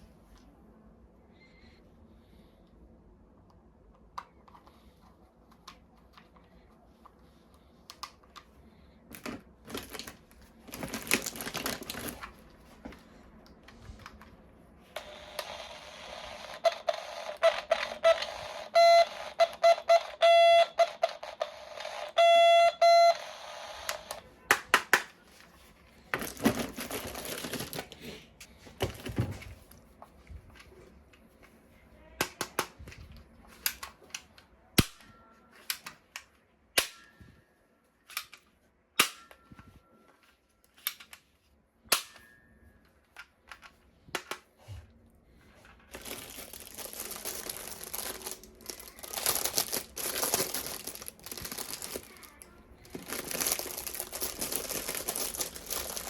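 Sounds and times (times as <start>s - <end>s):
clicks and plastic rustling: 9.1s - 14.4s, 45.5s - 56.0s
toy gun beeping pulses: 15.0s - 24.2s.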